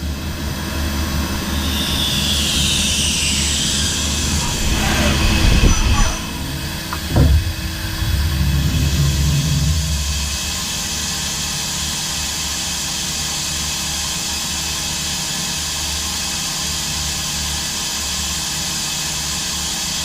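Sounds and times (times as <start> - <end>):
low machine hum: 0.4 - 11.8.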